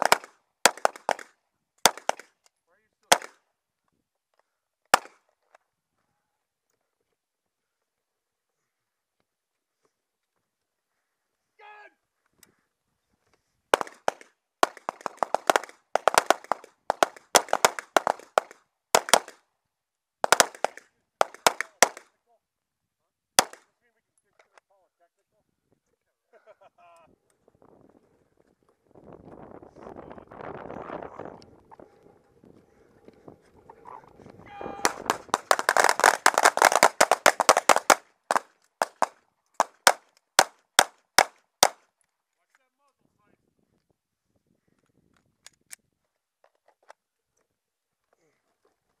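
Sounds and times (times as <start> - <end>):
rapid pistol fire: 0.0 - 1.3, 1.9 - 2.3, 3.1 - 3.4, 13.8 - 19.4, 20.2 - 22.0, 23.4 - 23.6, 34.8 - 41.8.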